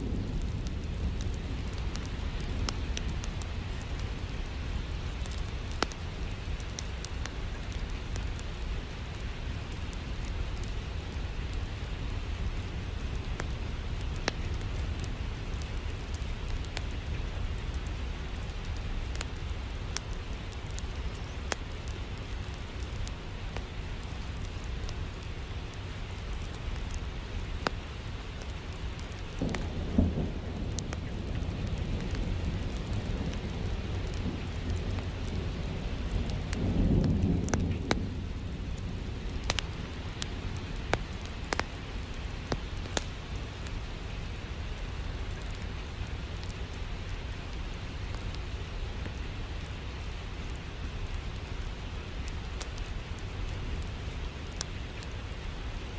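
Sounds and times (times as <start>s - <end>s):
low thunder rumbling: 0.0s - 7.8s, 29.3s - 43.0s
sharp crackles and ticks: 0.0s - 55.9s
steady rain: 0.0s - 55.9s.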